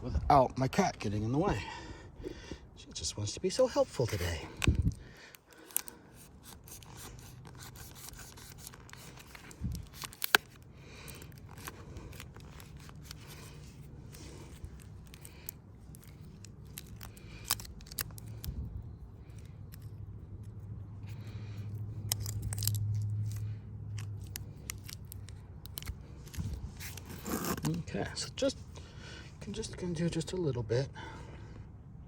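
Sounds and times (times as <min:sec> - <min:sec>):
low steady hum: 0:00.0 - 0:32.0
package snipping and rubbing: 0:04.0 - 0:27.9.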